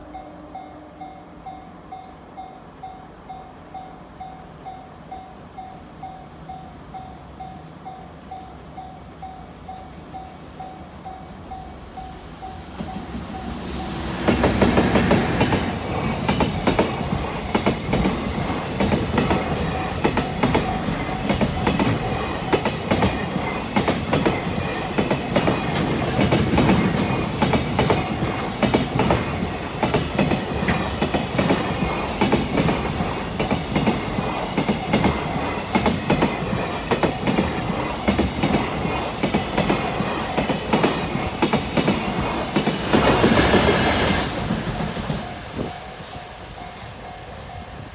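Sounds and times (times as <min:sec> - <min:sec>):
train rumble: 0:00.0 - 0:47.9
train wheels clattering over rail joints: 0:12.7 - 0:45.8.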